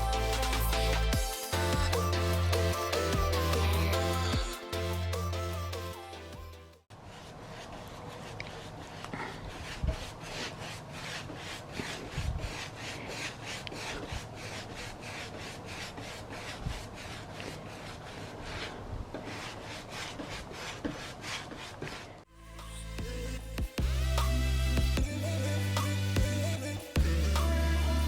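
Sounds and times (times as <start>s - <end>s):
rubbing strokes on wooden table: 7.0s - 22.2s.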